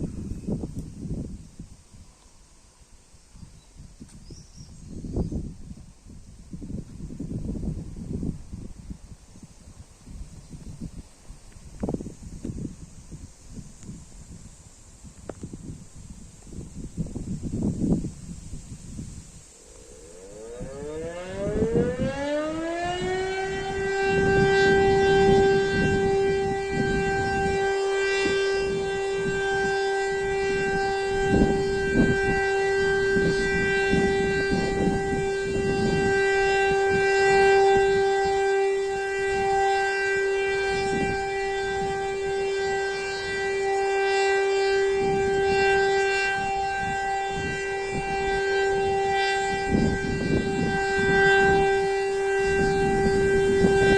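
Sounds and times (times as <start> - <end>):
civil defence siren wailing: 0.0 - 2.2, 15.0 - 53.9.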